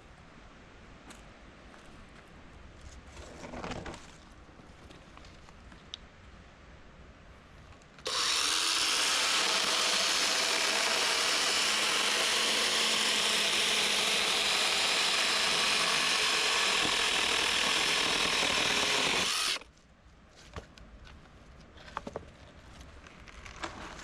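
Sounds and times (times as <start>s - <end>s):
electric chainsaw cutting wood: 8.1s - 19.6s.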